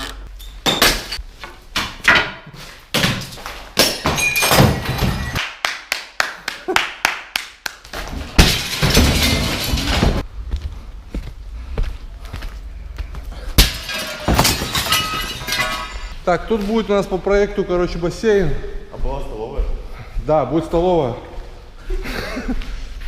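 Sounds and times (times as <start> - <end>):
crash: 8.0 - 10.3, 13.6 - 16.1.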